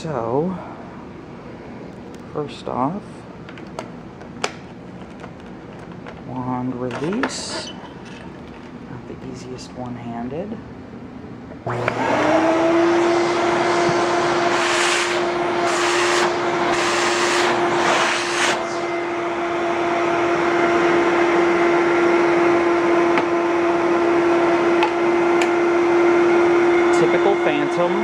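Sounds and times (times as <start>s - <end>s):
vacuum cleaner motor whine: 11.6s - 28.0s
vacuum cleaner switch: 11.7s - 18.9s
rushing air: 12.8s - 19.6s.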